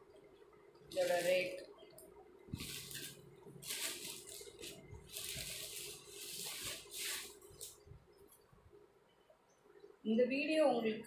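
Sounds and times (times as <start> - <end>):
fabric rustling: 2.5 - 7.8.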